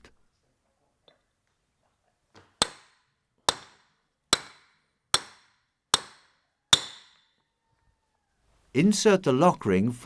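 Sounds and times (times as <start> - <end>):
hammer striking metal ringing: 2.6 - 7.3.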